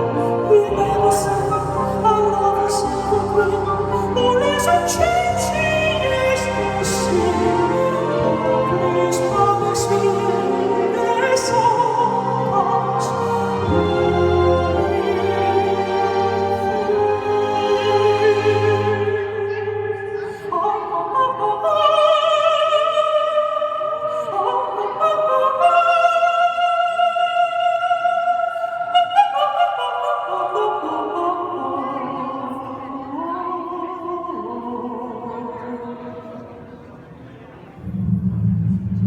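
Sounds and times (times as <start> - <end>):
orchestral backing: 0.0 - 20.0
operatic singing: 0.0 - 39.0.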